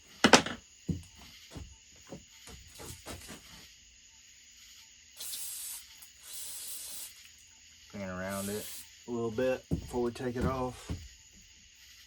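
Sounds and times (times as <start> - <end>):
spray hissing: 5.2 - 7.2, 8.0 - 9.4
tools knocking on metal: 9.7 - 11.0.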